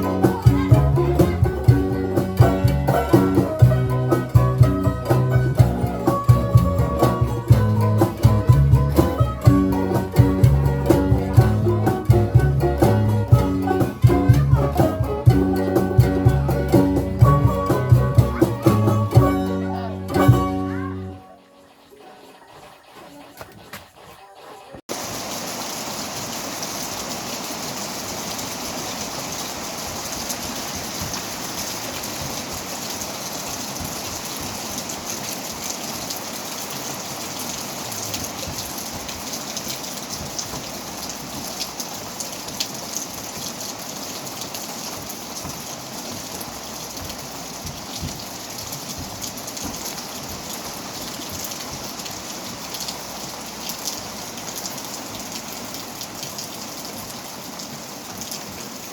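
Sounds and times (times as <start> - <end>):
steady rain falling: 0.0 - 58.9
drops ticking on a surface: 44.4 - 56.6.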